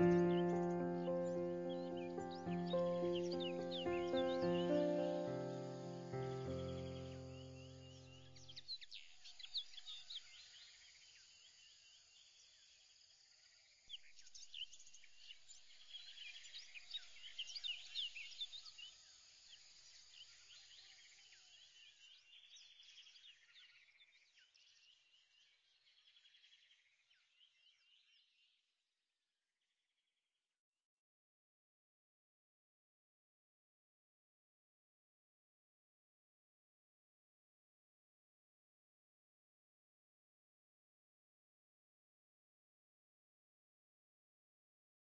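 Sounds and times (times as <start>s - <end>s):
light background hiss: 0.0s - 8.2s
birds chirping: 0.0s - 10.1s.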